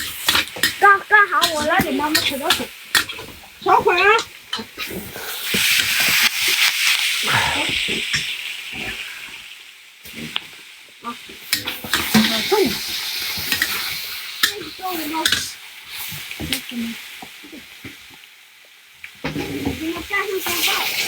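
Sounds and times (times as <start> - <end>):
metal spatula scraping a pan: 0.0 - 0.8, 1.4 - 3.4, 11.4 - 16.2
oil sizzling in a pan: 0.0 - 21.0.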